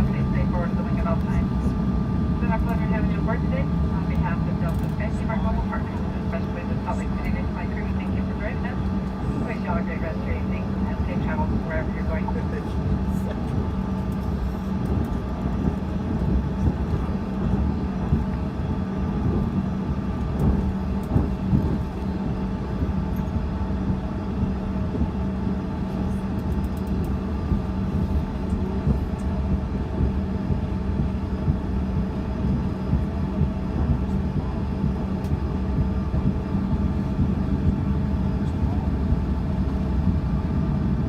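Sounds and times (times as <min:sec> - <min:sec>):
jet engines humming: 0:00.0 - 0:41.0
low rumble of airframe and wheels: 0:00.0 - 0:41.0.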